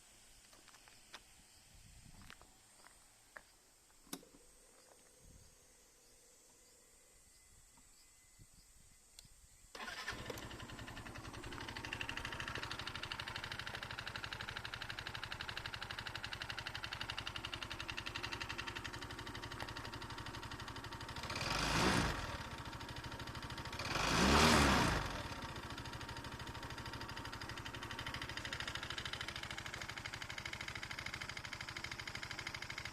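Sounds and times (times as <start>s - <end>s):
scooter engine idling and revving: 9.8s - 32.9s.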